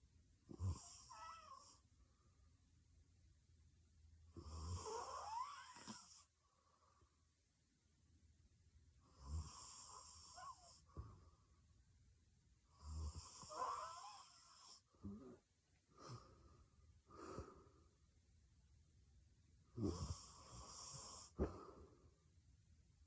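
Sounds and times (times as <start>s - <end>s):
woman snoring: 0.6s - 1.7s, 4.4s - 6.2s, 9.2s - 10.8s, 12.8s - 15.4s, 19.8s - 21.5s
breathing: 10.8s - 11.6s, 15.9s - 18.0s, 20.6s - 22.2s.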